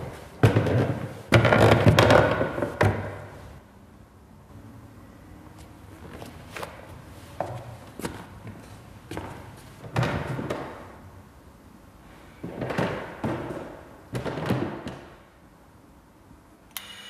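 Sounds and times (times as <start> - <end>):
bright ringing tones: 16.8 - 17.0.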